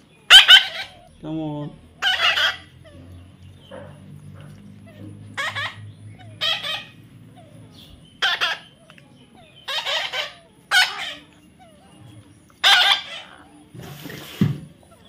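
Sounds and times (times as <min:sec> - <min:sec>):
chicken squawking: 0:00.2 - 0:01.2, 0:02.0 - 0:03.0, 0:05.1 - 0:12.0, 0:12.6 - 0:15.0.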